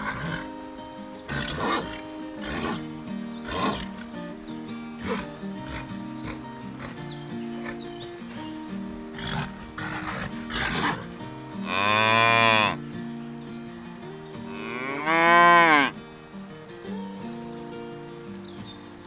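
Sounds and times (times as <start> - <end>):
background music with held notes: 0.0 - 19.0
cattle mooing: 11.6 - 12.8, 14.5 - 15.9.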